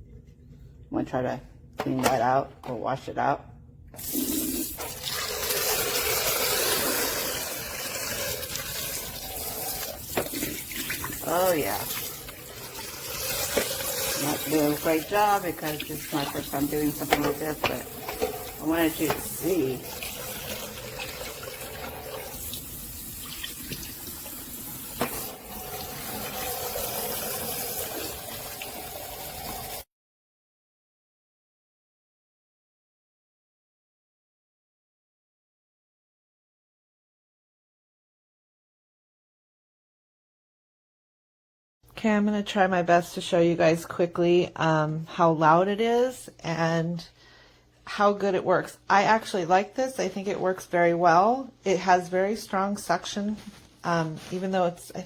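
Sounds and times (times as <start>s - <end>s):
water running from tap: 4.0s - 29.9s
tap running into sink: 23.2s - 29.8s.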